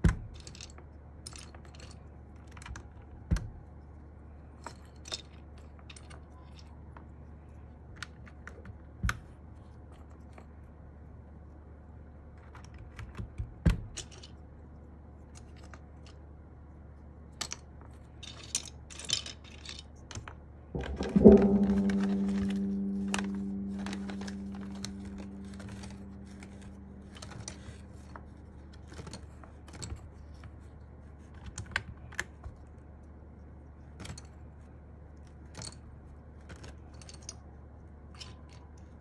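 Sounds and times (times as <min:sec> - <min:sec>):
steady low hum: 0:20.8 - 0:29.5.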